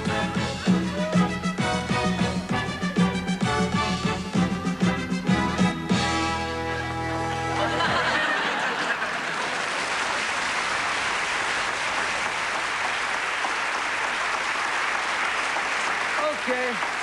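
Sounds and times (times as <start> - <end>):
audience applauding and cheering: 6.6 - 17.0.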